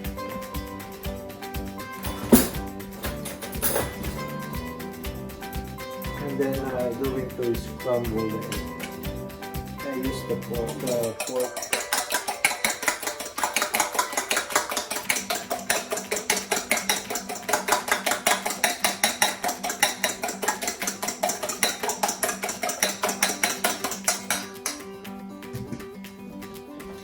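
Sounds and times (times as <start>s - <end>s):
fork clinking against bowl: 10.1s - 25.0s.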